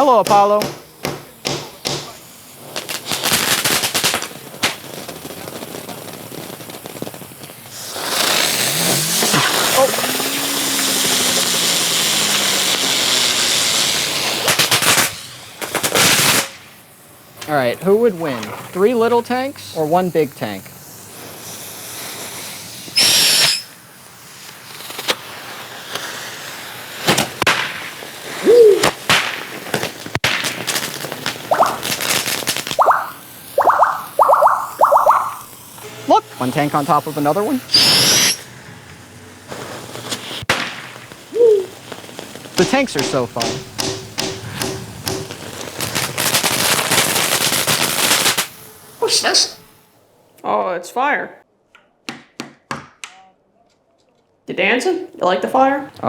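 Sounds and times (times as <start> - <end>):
firework sharp crack: 0.0 - 17.4, 20.8 - 35.8, 36.7 - 49.9
firework crackling pops: 0.0 - 50.0
high whistle: 23.0 - 23.7, 31.5 - 32.0, 32.8 - 35.5, 37.7 - 38.5.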